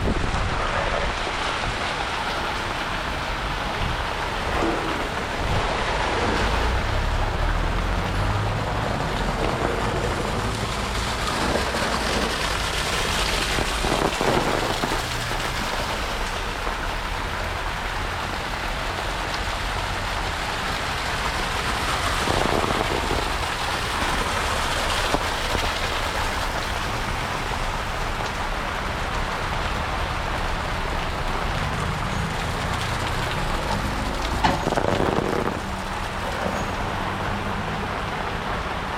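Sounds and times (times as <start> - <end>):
low rumble: 0.0 - 17.2
heavy rain falling: 0.0 - 38.9.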